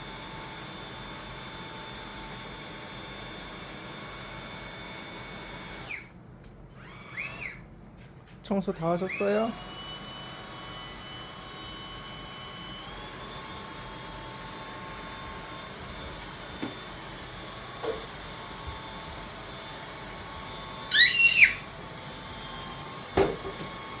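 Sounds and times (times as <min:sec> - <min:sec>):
vacuum cleaner motor whining: 0:00.0 - 0:06.1, 0:06.7 - 0:07.7, 0:09.0 - 0:24.0
loud high-pitched squeal: 0:20.9 - 0:21.7.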